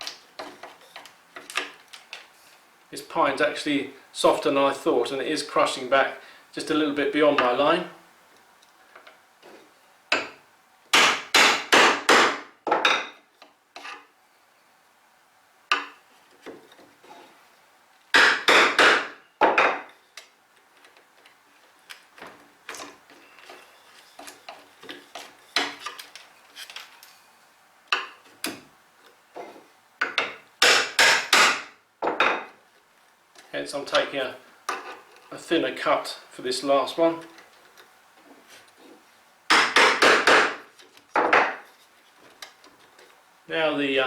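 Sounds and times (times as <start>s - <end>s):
hammer striking chisel: 10.1s - 13.1s, 18.2s - 19.8s, 30.0s - 32.4s, 39.5s - 40.6s.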